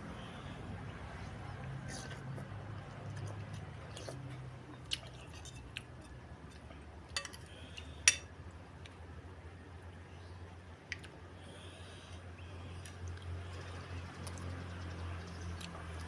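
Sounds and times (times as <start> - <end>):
low steady hum: 0.0 - 16.0
cutlery clinking against a bowl: 7.2 - 8.3.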